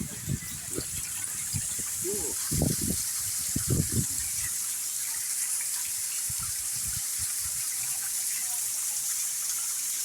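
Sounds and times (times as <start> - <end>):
waterfall rushing: 0.0 - 4.7.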